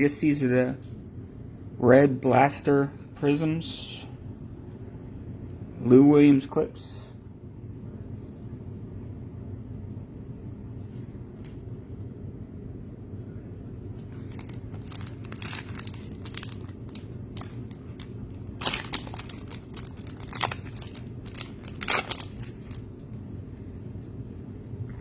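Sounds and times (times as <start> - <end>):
steady low hum: 0.0 - 25.0
card packaging crinkling: 13.9 - 23.2.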